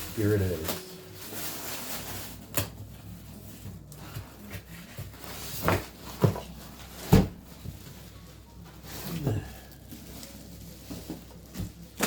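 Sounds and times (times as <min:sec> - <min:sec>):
shipping box thumps and knocks: 0:07.0 - 0:07.4.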